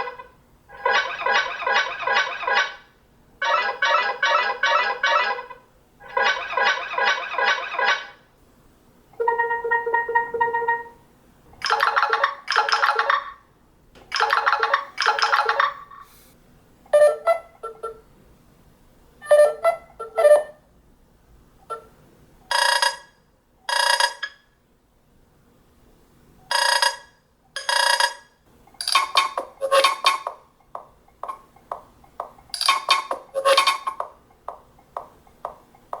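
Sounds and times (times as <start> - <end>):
electronic ringtone chimes and bleeps: 9.2 - 11.0.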